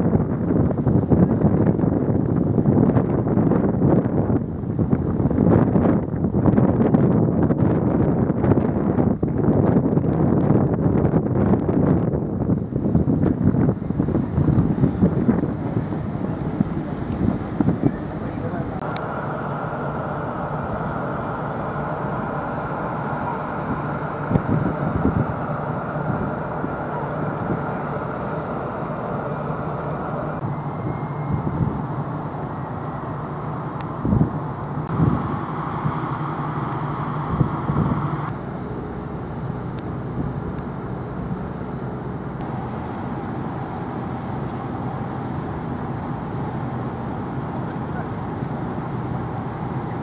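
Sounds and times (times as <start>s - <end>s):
engine drone: 0.0s - 50.0s
broad rushing noise: 10.7s - 50.0s.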